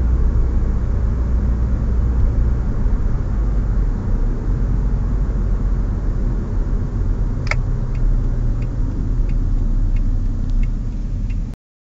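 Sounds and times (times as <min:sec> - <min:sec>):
car engine and road rumble: 0:00.0 - 0:11.6
faint regular ticks: 0:07.5 - 0:11.5.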